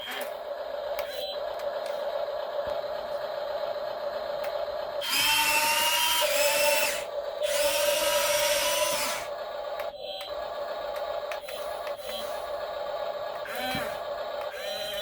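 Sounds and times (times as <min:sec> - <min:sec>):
electric motors whining: 0:04.4 - 0:09.9.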